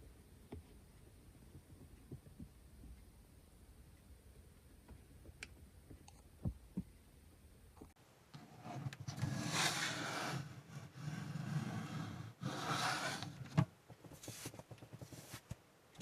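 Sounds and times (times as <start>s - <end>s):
faint clicks and taps: 0.4s - 3.2s, 4.0s - 7.1s, 13.8s - 16.0s.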